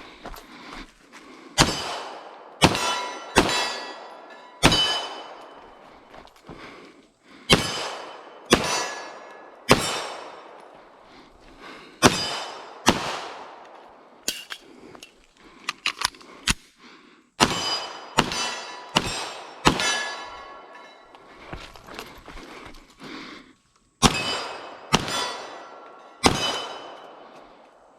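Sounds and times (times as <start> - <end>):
pistol shots: 1.6 - 5.6, 7.5 - 10.8, 12.0 - 14.4, 17.4 - 20.6, 24.0 - 27.4
steel target clanging: 2.6 - 5.8, 7.5 - 10.4, 17.4 - 21.2, 24.1 - 27.2.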